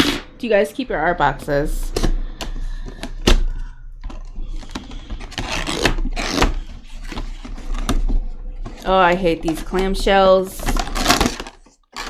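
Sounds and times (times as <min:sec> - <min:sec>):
packaging scraping and rubbing: 0:04.0 - 0:12.0.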